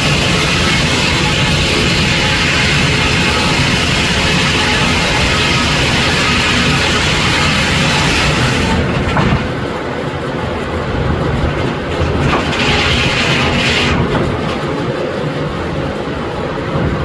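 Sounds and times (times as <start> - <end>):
steam hissing loudly: 0.0 - 8.9
steam engine clattering: 0.0 - 17.0.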